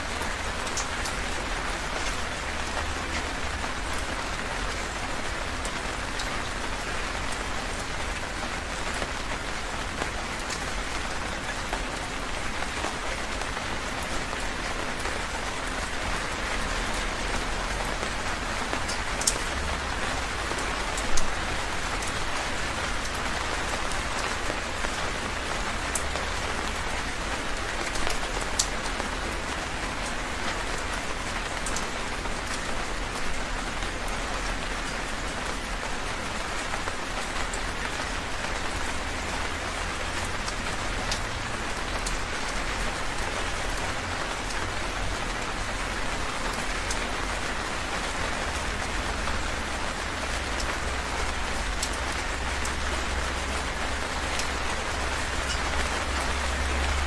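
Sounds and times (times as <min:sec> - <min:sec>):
heavy rain hissing: 0:00.0 - 0:57.0.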